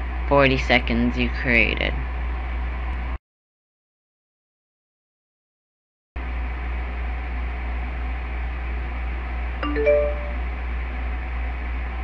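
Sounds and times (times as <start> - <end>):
low electrical hum: 0.0 - 3.2, 6.2 - 12.0
two-note electronic chime: 9.6 - 10.4.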